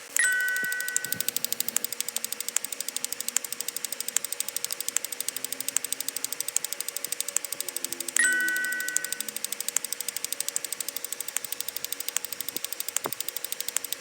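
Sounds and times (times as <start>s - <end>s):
rapid counter ticking: 0.0s - 14.0s
bright ringing ding: 0.2s - 1.4s, 8.2s - 9.4s.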